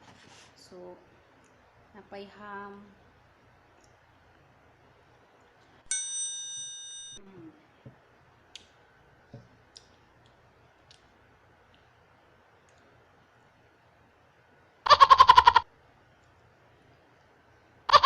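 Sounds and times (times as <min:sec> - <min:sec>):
bright metallic ding: 0:05.9 - 0:07.2.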